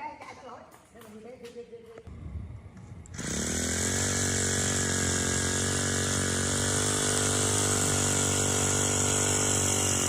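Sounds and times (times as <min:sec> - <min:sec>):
lawn mower engine running: 0:02.8 - 0:10.0.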